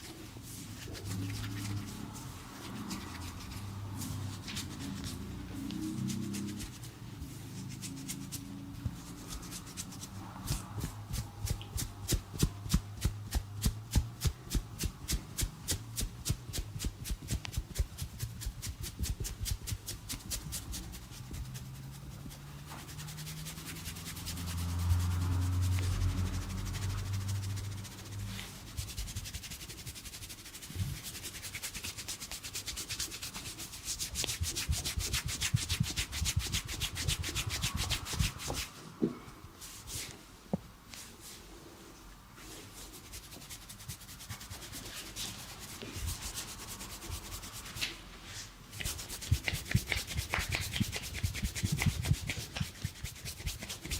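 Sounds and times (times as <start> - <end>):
hands rubbing in massage: 0.0 - 39.0, 39.6 - 53.9.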